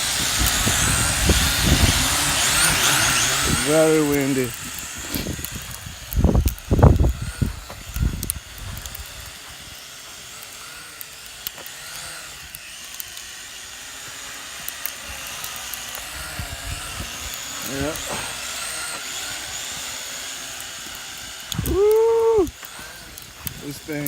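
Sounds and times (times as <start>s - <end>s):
wind buffeting microphone: 0.0s - 9.8s, 16.0s - 19.6s, 21.3s - 24.0s
drone propellers whining: 0.0s - 24.0s.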